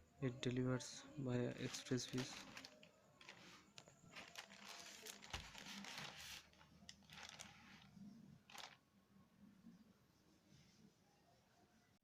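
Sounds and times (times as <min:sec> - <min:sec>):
packaging rustling and crinkling: 0:01.5 - 0:08.8.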